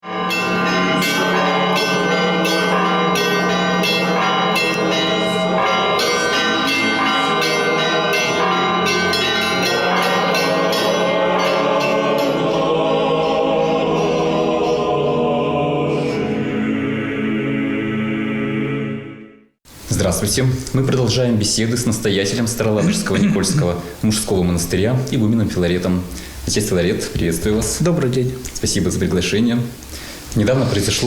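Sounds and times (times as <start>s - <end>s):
church bells ringing: 0.0s - 14.8s.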